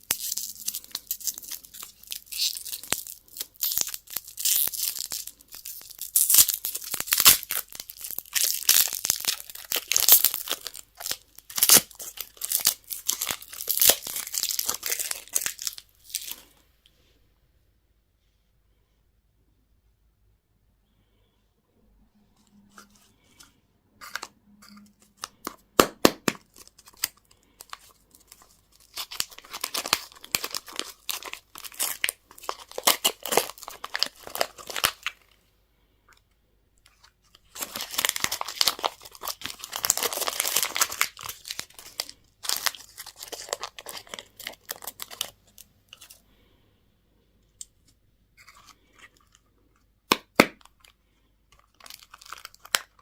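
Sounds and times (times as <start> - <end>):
packaging tearing and crinkling: 0.0 - 16.5, 24.0 - 35.2, 37.3 - 46.2, 51.6 - 53.0.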